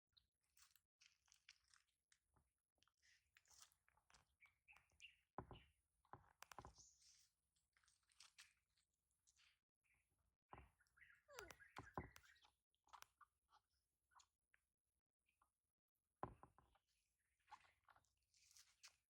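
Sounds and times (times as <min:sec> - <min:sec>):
faint chewing and clicking: 0:00.5 - 0:08.6, 0:11.3 - 0:13.3.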